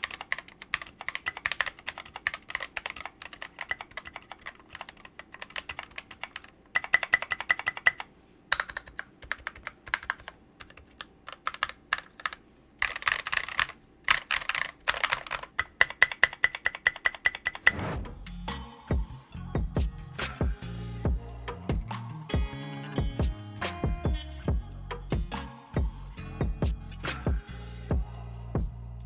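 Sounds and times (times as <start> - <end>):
mechanical keyboard clacking: 0.0 - 17.6.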